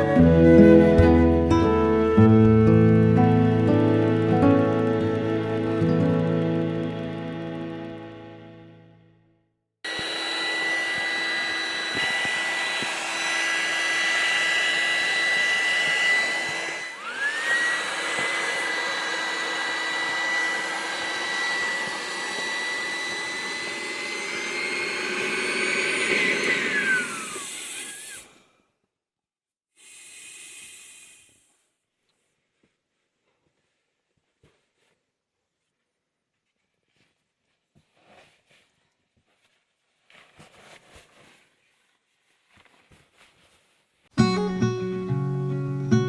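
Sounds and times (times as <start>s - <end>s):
blower whining: 0.0s - 8.6s, 9.9s - 28.3s.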